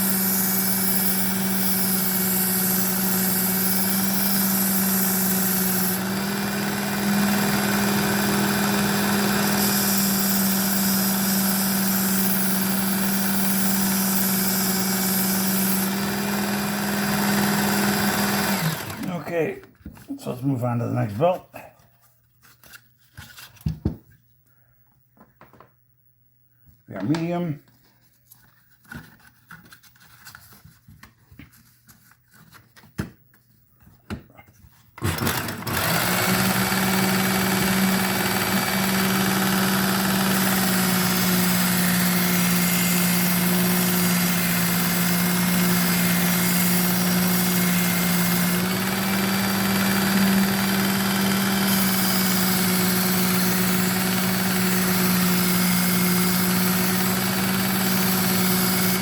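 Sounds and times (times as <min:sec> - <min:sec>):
belt sharpener motor running: 0:00.0 - 0:19.2, 0:35.0 - 0:59.0
moving sander belt: 0:00.0 - 0:19.3, 0:35.0 - 0:59.0.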